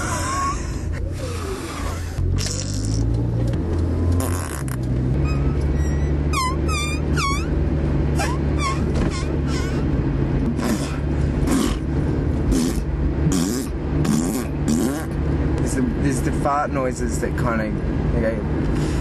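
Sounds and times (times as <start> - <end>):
car engine and road hum: 0.0 - 19.0
man making shrill squeaks: 4.3 - 7.6, 8.2 - 9.9.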